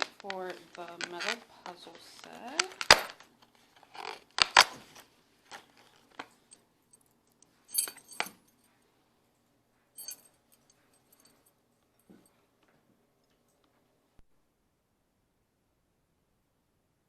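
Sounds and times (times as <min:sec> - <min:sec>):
ringing metallic clinks: 0:07.7 - 0:08.6, 0:10.0 - 0:12.1.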